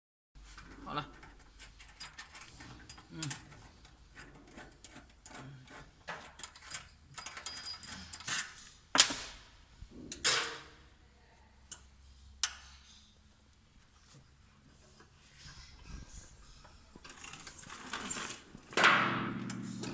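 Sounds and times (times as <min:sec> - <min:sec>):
metal tools clinking and rattling: 0:00.6 - 0:08.7.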